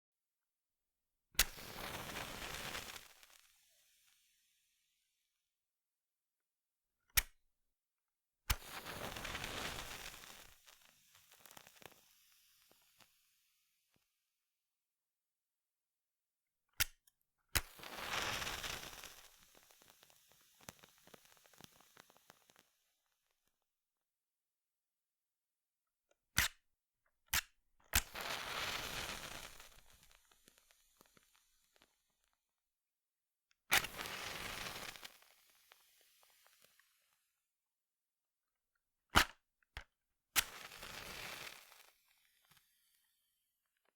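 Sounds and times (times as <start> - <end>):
burning match crackling: 1.4 - 3.6, 8.5 - 13.0, 17.6 - 22.6, 27.3 - 31.9, 33.7 - 36.9, 40.4 - 42.6
match flaring with hiss: 1.4 - 4.2, 8.5 - 13.0, 17.6 - 22.6, 27.3 - 31.9, 33.7 - 37.0, 40.4 - 42.6
match scraping on matchbox: 26.4 - 26.6, 27.3 - 31.3, 33.7 - 36.8.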